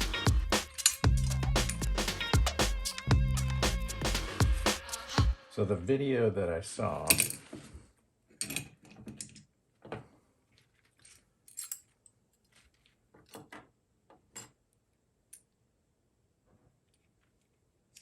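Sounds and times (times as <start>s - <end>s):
small parts clicking and clinking: 0.6s - 1.8s, 8.4s - 9.6s, 10.5s - 15.6s, 16.8s - 18.0s.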